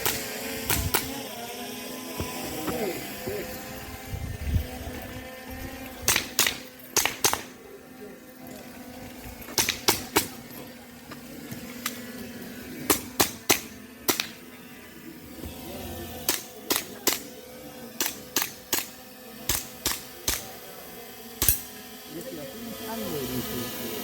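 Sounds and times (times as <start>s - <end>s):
airsoft pistol shots: 6.1s - 7.6s, 9.6s - 10.4s, 12.9s - 14.4s, 16.3s - 17.3s, 18.0s - 18.9s, 19.5s - 20.5s, 21.4s - 21.7s.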